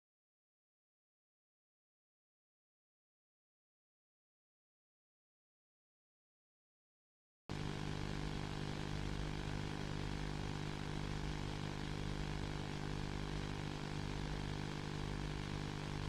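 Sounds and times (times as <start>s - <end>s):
droning electrical hum with hiss: 7.5s - 16.0s.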